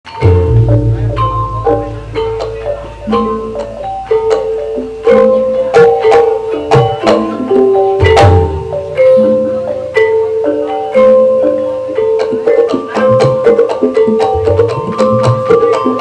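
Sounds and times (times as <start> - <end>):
deep drum strokes: 0.1 - 10.4
mallet-struck keyed instruments: 0.1 - 16.0.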